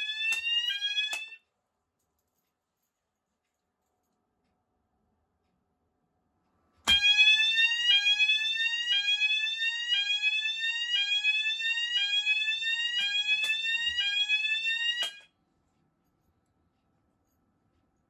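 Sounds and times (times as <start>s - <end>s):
fire alarm rising sweep tone: 0.0s - 1.4s, 6.9s - 15.2s.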